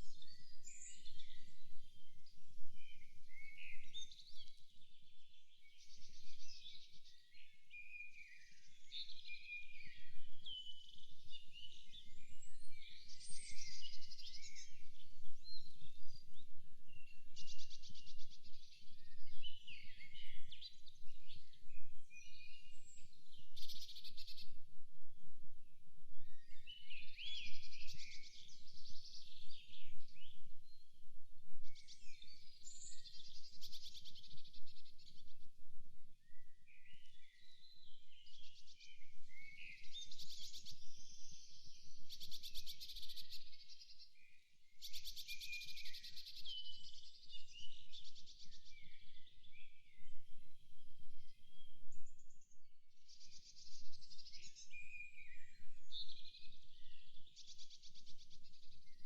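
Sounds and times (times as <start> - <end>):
birds singing and calling: 36.3 - 52.5, 53.1 - 59.0.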